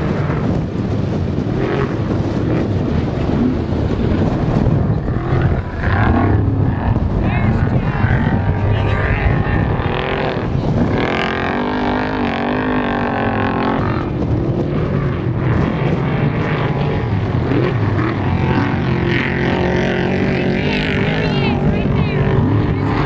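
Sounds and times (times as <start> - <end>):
engine revving: 0.0 - 23.0
race vehicle engines running: 0.0 - 23.0.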